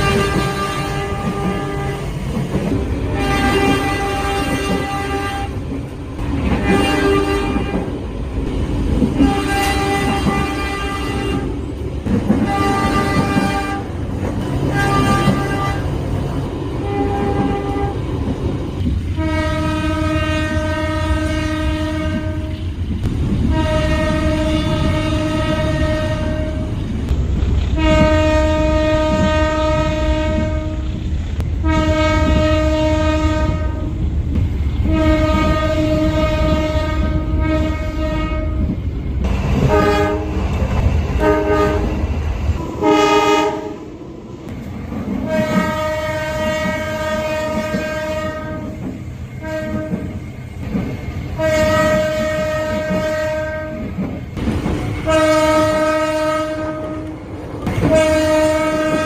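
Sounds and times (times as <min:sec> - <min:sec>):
locomotive horn blasts: 0:00.0 - 0:02.2, 0:03.2 - 0:05.6, 0:06.6 - 0:07.9, 0:09.2 - 0:11.6, 0:12.4 - 0:13.9, 0:14.7 - 0:15.9, 0:16.8 - 0:18.0, 0:19.2 - 0:22.8, 0:23.5 - 0:27.0, 0:27.8 - 0:30.9, 0:31.6 - 0:34.0, 0:34.8 - 0:38.7, 0:39.7 - 0:40.3, 0:41.2 - 0:41.9, 0:42.6 - 0:43.9, 0:45.2 - 0:50.2, 0:51.4 - 0:54.0, 0:55.0 - 0:57.1, 0:57.8 - 0:59.0
train rumble: 0:00.0 - 0:59.0.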